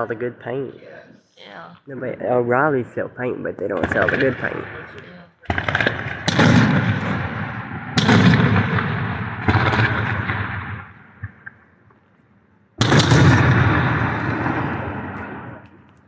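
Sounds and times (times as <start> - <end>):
fireworks booming overhead: 3.0 - 11.5, 12.8 - 15.9.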